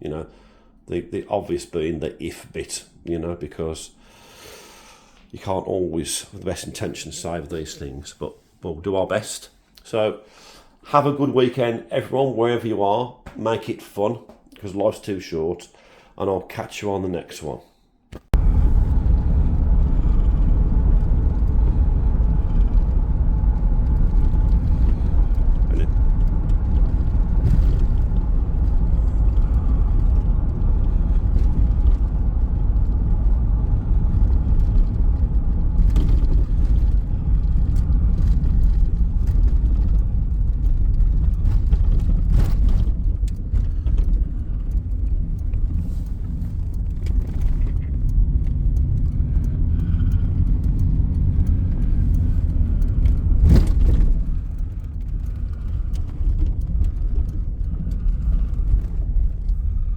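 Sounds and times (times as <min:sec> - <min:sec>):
car engine and road rumble: 0:18.1 - 0:59.9.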